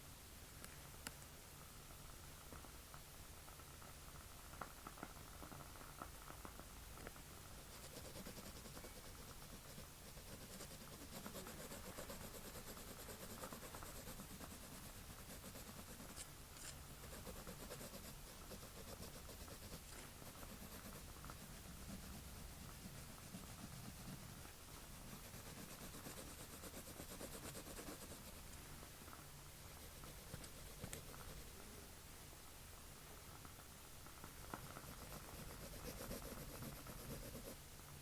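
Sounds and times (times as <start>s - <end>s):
pencil scratching on paper: 7.6s - 28.5s, 29.7s - 31.5s, 34.6s - 37.6s.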